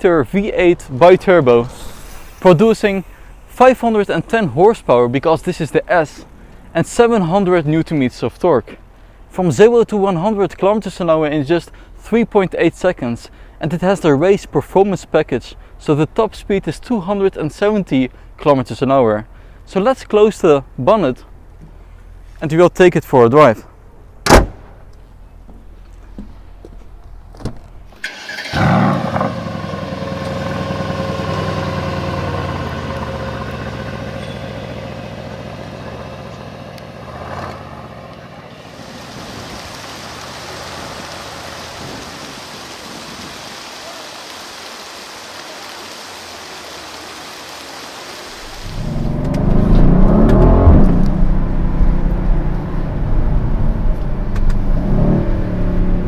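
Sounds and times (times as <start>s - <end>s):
car engine starting and idling: 0.0s - 8.2s, 23.6s - 38.8s, 48.3s - 56.0s.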